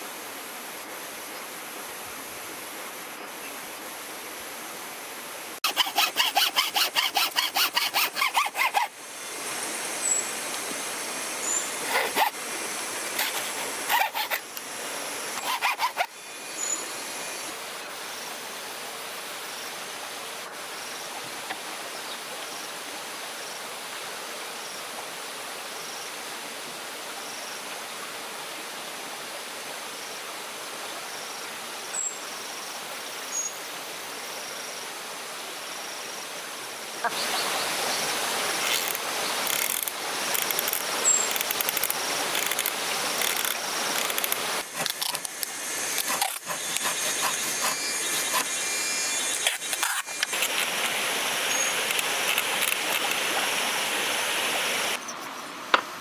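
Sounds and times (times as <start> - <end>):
rushing running water: 0.0 - 20.5, 36.4 - 55.0
steady hiss: 0.0 - 21.3, 31.4 - 56.0
faint insect chirping: 9.1 - 21.2, 31.0 - 55.5.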